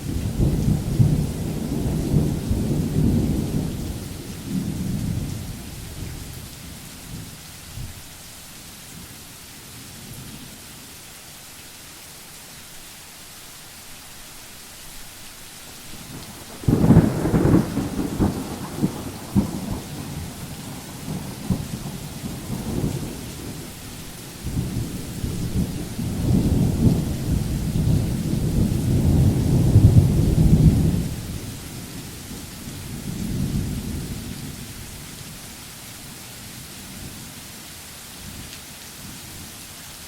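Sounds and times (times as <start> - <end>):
thunder rumbling: 0.0 - 6.4, 16.0 - 31.6
steady rain: 0.0 - 40.0.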